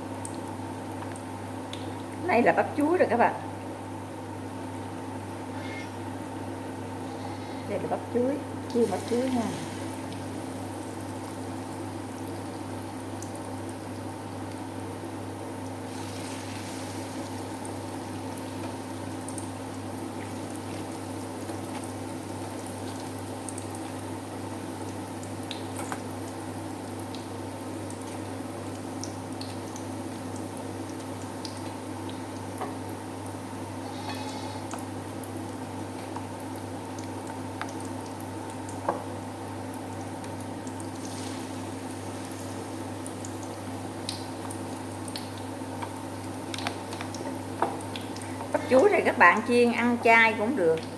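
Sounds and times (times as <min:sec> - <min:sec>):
batter deep-frying in hot oil: 0:00.0 - 0:50.9
small pops and crackles: 0:43.1 - 0:48.8.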